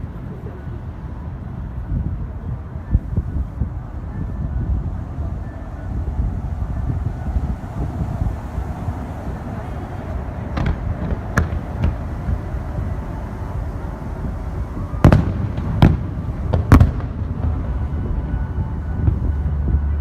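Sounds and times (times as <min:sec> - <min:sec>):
steady low rumble: 0:00.0 - 0:20.0
firework shells bursting: 0:10.4 - 0:13.8.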